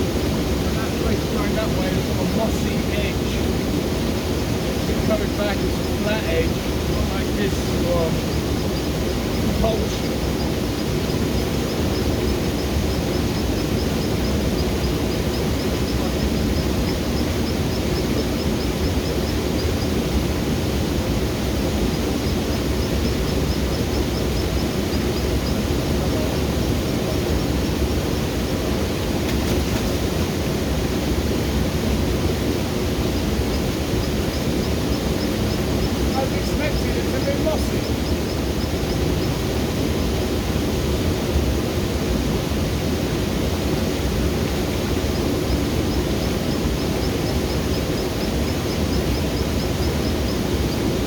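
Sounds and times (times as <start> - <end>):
waterfall roar: 0.0 - 51.0.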